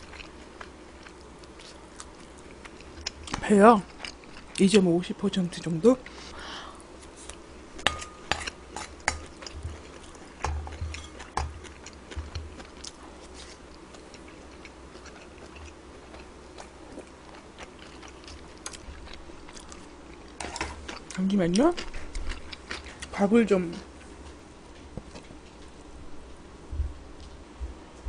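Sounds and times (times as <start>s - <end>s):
chewing thumps: 7.9s - 19.8s.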